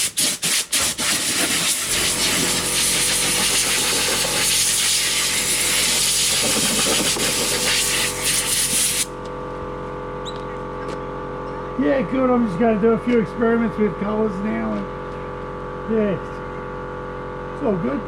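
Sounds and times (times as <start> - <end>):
power tool hissing: 0.0 - 9.1.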